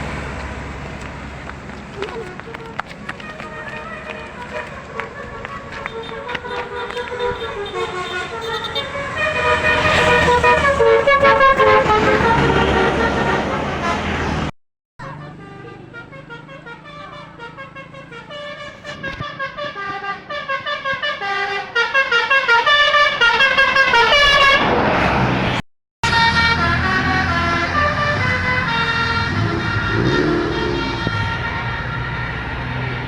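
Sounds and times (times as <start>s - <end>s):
engine rumble: 0.0s - 20.2s
bus musical horn playing a tune: 2.1s - 24.7s, 26.0s - 33.0s.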